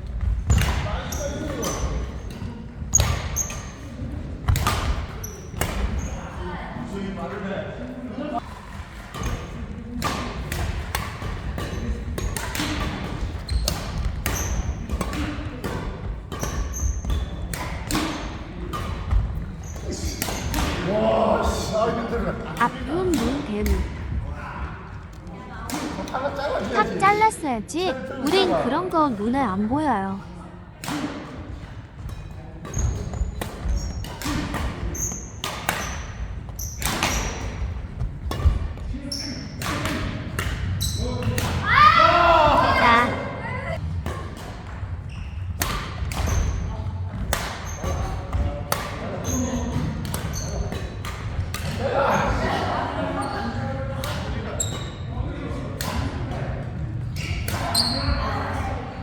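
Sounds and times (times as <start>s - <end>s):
court shoes squeaking: 0.2s - 6.4s, 11.2s - 20.8s, 32.0s - 37.7s, 45.0s - 45.6s, 49.2s - 51.2s, 54.5s - 55.1s, 57.0s - 58.6s
racket hitting shuttlecock: 10.0s - 19.1s.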